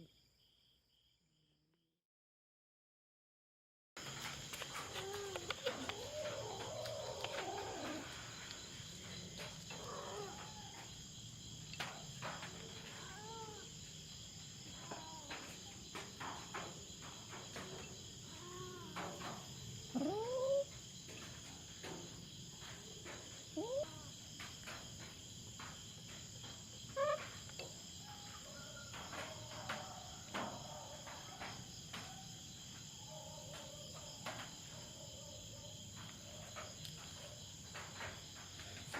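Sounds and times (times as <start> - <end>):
crickets chirring: 4.0 - 38.9
cats meowing and yowling: 4.8 - 10.9, 12.4 - 13.8, 14.7 - 15.8, 18.3 - 20.7.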